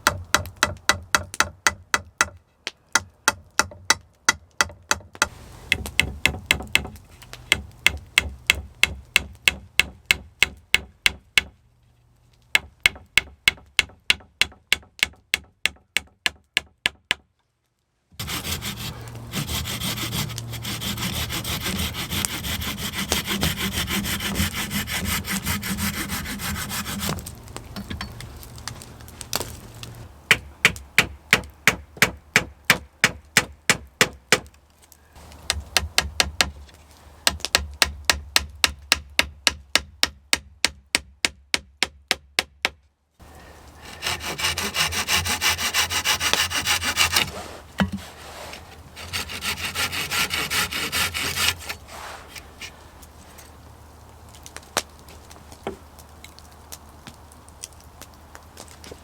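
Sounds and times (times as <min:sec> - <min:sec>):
sharp wooden knocks: 0:00.0 - 0:02.4, 0:03.0 - 0:11.6, 0:12.5 - 0:17.2
hand saw cutting wood: 0:18.2 - 0:27.3, 0:43.8 - 0:52.8.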